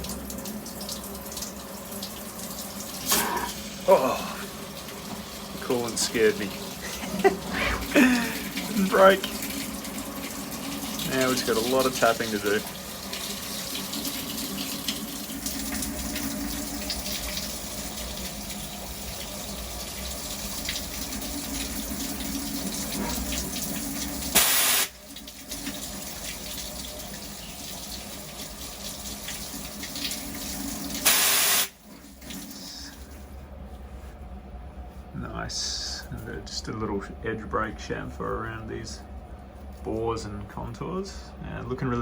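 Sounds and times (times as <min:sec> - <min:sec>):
low machine hum: 0:00.0 - 0:31.1, 0:31.7 - 0:42.0
coolant spraying and splashing: 0:00.0 - 0:31.8
loud bursts of hiss: 0:24.4 - 0:24.9, 0:31.0 - 0:31.7.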